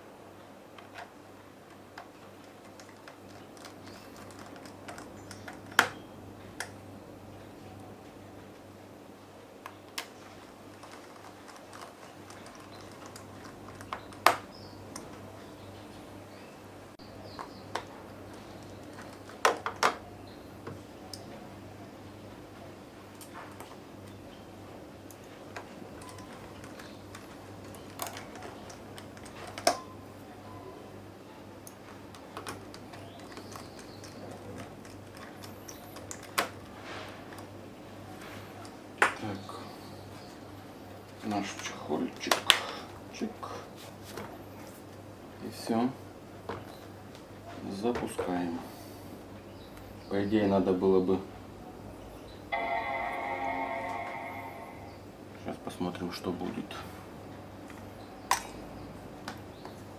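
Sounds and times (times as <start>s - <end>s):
small clicks and taps: 0.8s - 6.8s
steady low hum: 51.3s - 55.7s.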